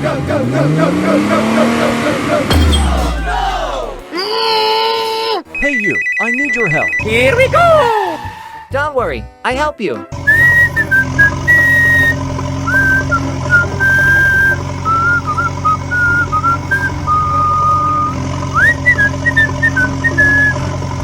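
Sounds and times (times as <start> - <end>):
whistled tune: 10.2 - 20.7.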